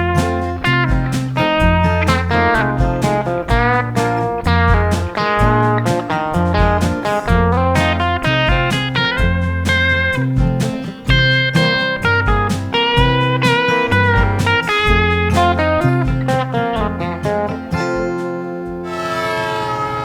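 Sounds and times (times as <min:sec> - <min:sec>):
country blues guitars: 0:00.0 - 0:19.6
rushing noise: 0:18.9 - 0:20.0.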